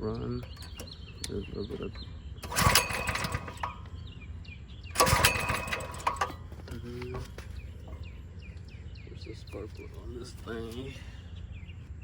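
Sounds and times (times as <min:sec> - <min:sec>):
pull cord starter whirring: 0:00.4 - 0:04.1, 0:04.9 - 0:08.0.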